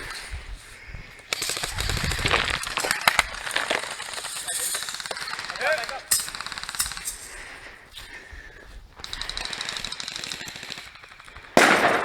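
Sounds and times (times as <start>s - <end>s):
airsoft gun full-auto firing: 1.3s - 7.3s, 9.3s - 12.0s.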